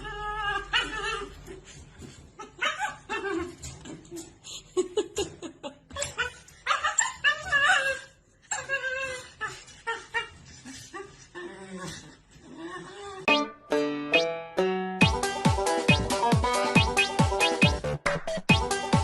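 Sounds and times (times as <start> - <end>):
dog whining and yipping: 0.0 - 4.3, 5.9 - 13.3
music: 13.3 - 19.0.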